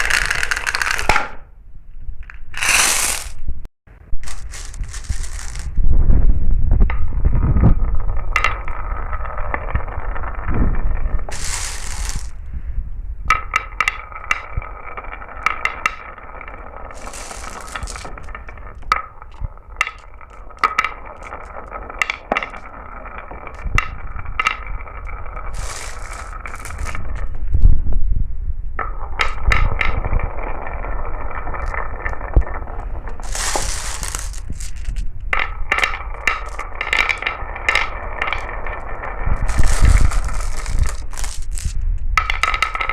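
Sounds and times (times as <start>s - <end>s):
marbles clicking and clinking: 0.0s - 1.4s, 2.2s - 3.4s, 4.2s - 5.8s, 8.2s - 12.5s, 13.3s - 27.4s, 28.8s - 42.9s
marbles rolling down a track: 0.0s - 1.4s, 2.3s - 3.4s, 4.2s - 5.8s, 6.9s - 12.5s, 13.3s - 27.4s, 28.8s - 42.9s.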